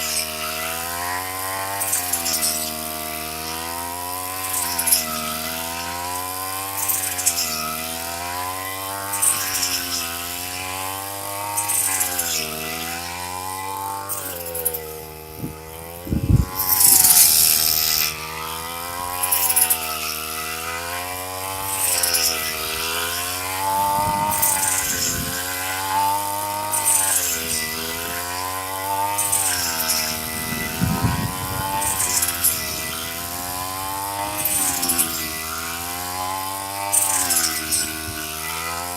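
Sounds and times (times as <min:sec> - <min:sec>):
two-stroke engine running: 0:13.7 - 0:38.9
crackling rushes: 0:29.2 - 0:35.0.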